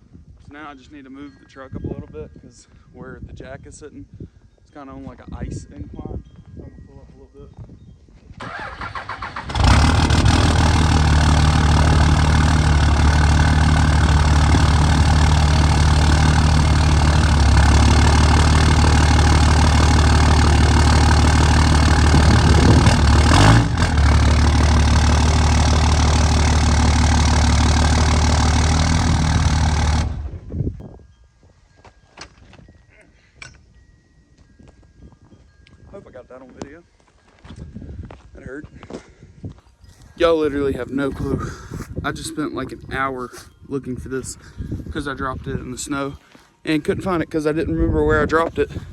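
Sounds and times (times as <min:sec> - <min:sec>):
diesel truck engine running: 0:08.4 - 0:30.5.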